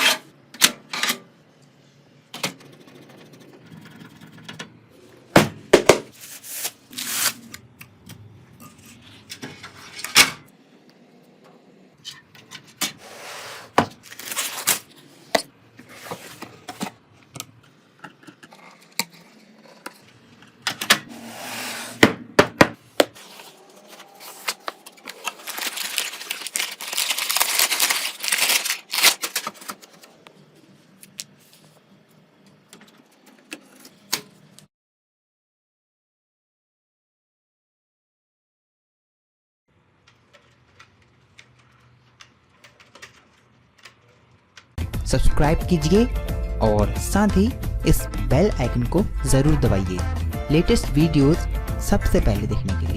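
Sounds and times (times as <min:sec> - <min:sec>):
computer parts clicking and clunking: 0:40.0 - 0:44.8.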